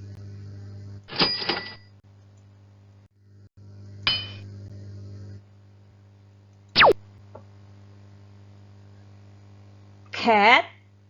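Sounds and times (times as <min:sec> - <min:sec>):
low hum: 0:06.7 - 0:08.4.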